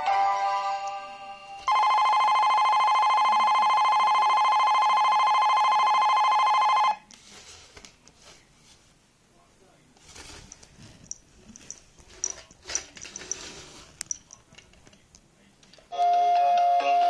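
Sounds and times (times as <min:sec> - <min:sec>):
alarm clock melody: 0:00.0 - 0:07.0
electric bell ringing: 0:00.0 - 0:07.0.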